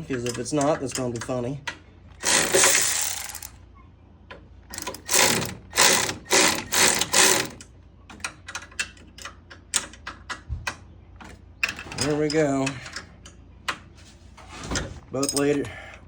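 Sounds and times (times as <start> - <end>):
socket ratchet clicking: 2.2 - 3.5, 4.7 - 7.6.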